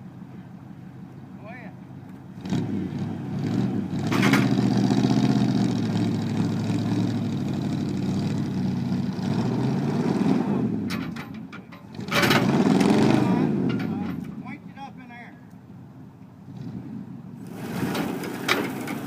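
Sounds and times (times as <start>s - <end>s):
engine revving: 2.3s - 11.1s, 11.9s - 14.2s, 16.4s - 19.0s.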